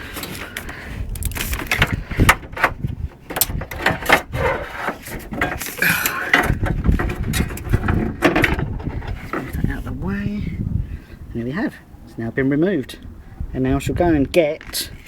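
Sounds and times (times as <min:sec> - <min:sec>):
clicks knocks and scraping rattles: 0:00.0 - 0:10.0.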